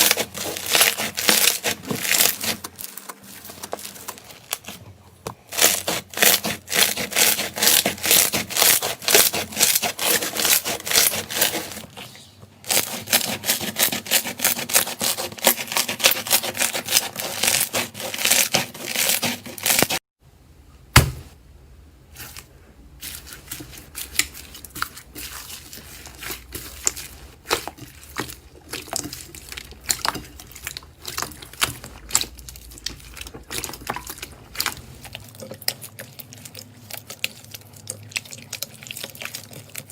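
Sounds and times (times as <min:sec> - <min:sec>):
sharp thump: 0:20.9 - 0:21.4.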